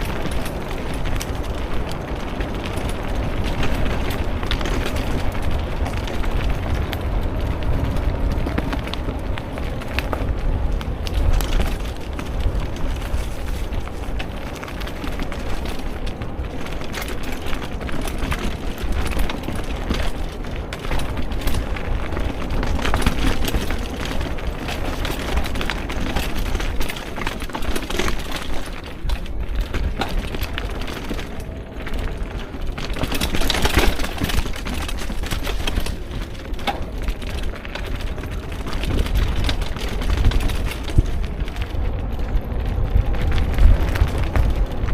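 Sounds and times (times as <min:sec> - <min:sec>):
crackling knocks and rattles: 0:00.0 - 0:44.9
vehicle rumble on rough track: 0:00.0 - 0:44.9.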